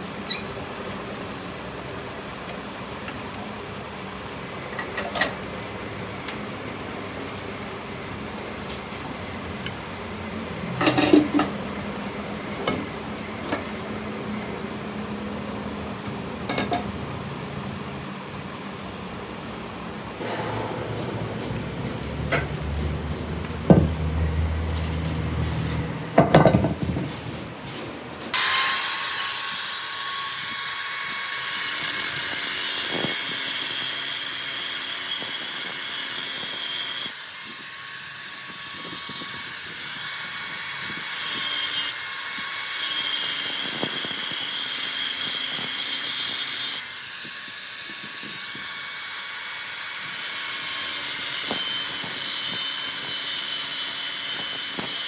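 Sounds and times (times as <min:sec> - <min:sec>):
low hum: 0:20.1 - 0:26.1
knocks: 0:20.2 - 0:24.0
power tool hissing and whining: 0:28.3 - 0:55.0.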